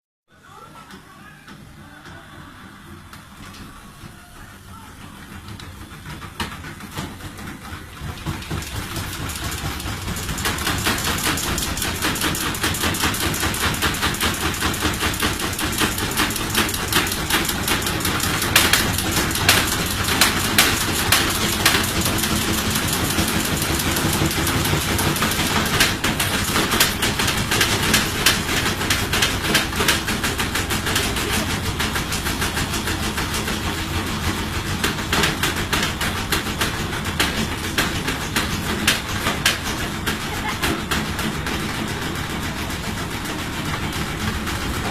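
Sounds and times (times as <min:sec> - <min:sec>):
washing machine clattering: 0:00.4 - 0:44.9.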